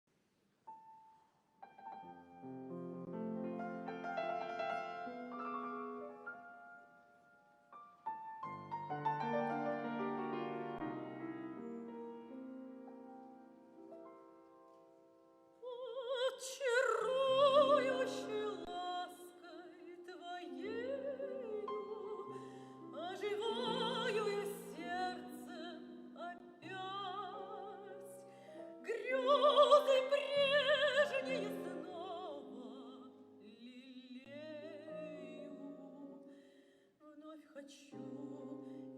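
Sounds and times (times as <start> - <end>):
solo piano: 0.7 - 15.6, 16.6 - 36.4
person singing with vibrato: 15.6 - 38.9.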